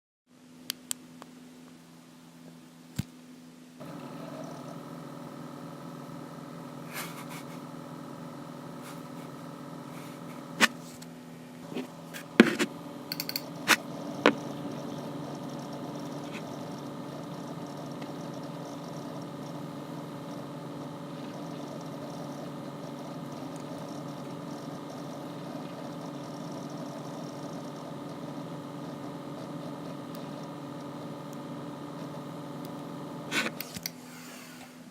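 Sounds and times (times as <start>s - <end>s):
computer humming: 3.7s - 34.9s
sharp clicks: 13.1s - 14.4s.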